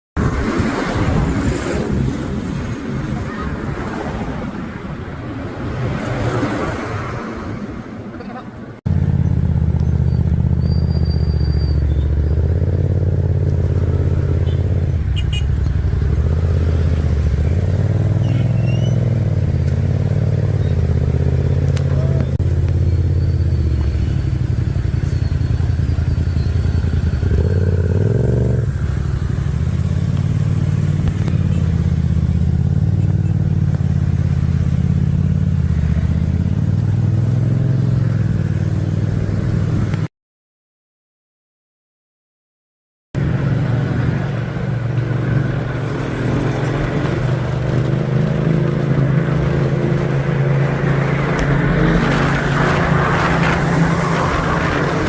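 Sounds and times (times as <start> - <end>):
motorcycle engine drone: 8.9 - 40.0, 43.2 - 55.0.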